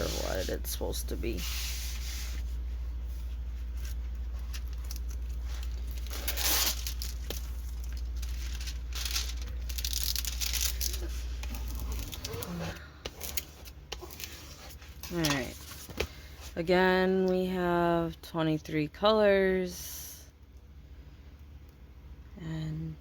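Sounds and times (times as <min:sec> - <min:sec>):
steady low hum: 0:00.0 - 0:23.0
plastic packaging crinkling: 0:03.4 - 0:15.9.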